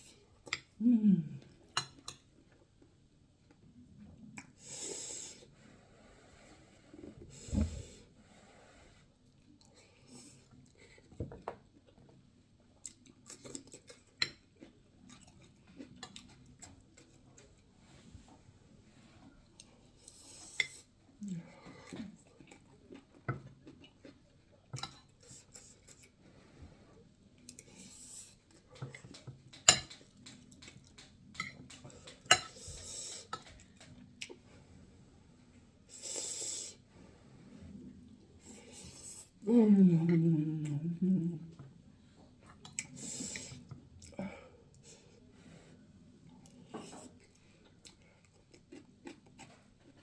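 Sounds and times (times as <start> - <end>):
person chewing food: 12.8 - 17.7, 21.8 - 26.2, 46.2 - 50.0
cutlery clinking on a plate: 28.9 - 30.8, 31.4 - 33.5.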